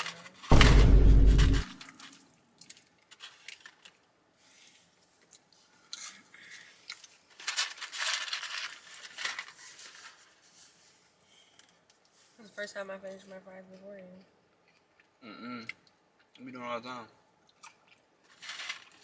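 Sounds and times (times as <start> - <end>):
chewing fries: 1.7 - 12.4, 13.7 - 16.6, 17.4 - 19.0.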